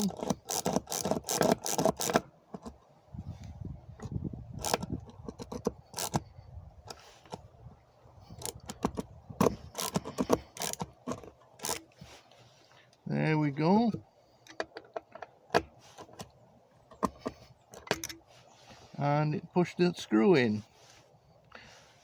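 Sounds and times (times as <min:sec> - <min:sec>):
ratchet screwdriver clicking: 0:05.4 - 0:06.2.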